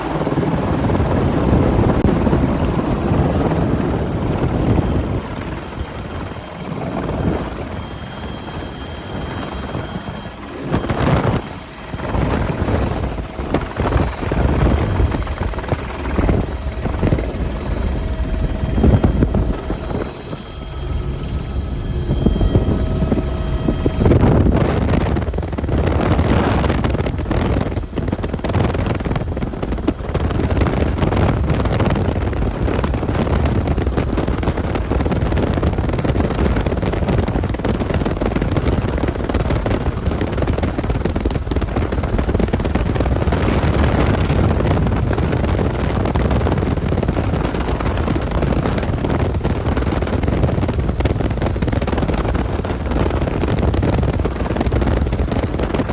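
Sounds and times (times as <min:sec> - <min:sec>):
pitched hum: 0:00.0 - 0:39.4
helicopter rotor and engine: 0:00.0 - 0:55.9
wind on microphone: 0:00.0 - 0:55.9.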